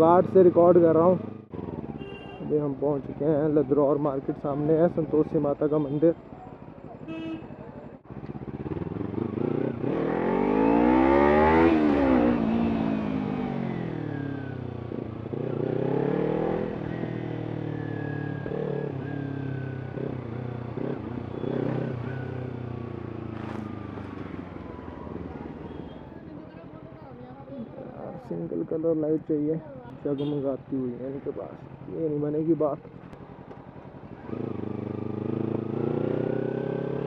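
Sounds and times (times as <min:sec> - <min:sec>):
motorcycle engine revving: 0:06.5 - 0:26.0, 0:31.6 - 0:37.0.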